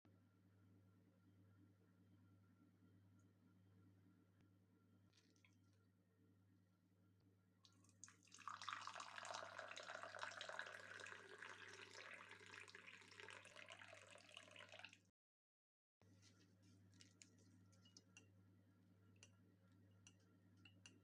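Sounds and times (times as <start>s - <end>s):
water pouring: 7.7s - 15.1s.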